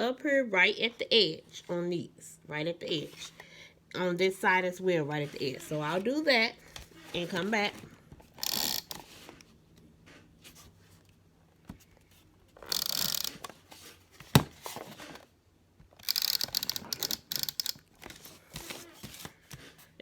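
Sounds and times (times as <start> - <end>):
tape dispenser click: 8.3 - 9.1, 12.6 - 13.6, 16.0 - 18.8
adhesive tape pulled and torn: 12.6 - 13.5, 16.0 - 17.8.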